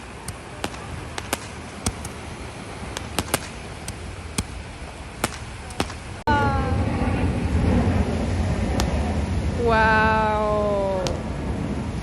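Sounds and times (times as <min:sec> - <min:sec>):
sharp clicks or taps: 0:00.0 - 0:02.2, 0:03.0 - 0:06.1
steady background noise: 0:00.0 - 0:12.0.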